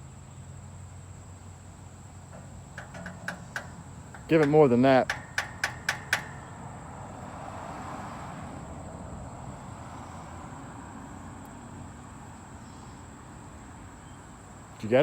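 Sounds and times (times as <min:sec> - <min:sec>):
hammer knocking on metal: 0:02.3 - 0:07.0.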